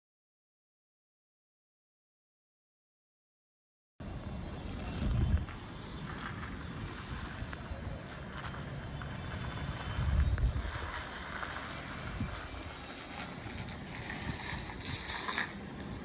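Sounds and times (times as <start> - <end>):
low outdoor rumble: 4.0 - 16.0
wind buffeting microphone: 4.3 - 16.0.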